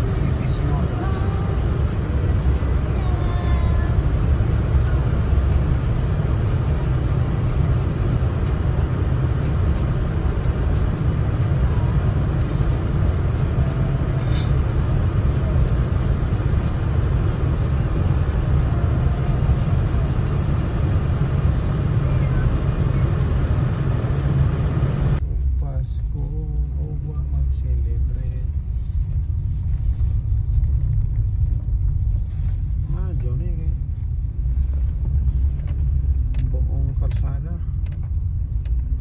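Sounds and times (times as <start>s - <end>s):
road hiss: 0.0s - 25.2s
car interior rumble: 0.0s - 39.0s.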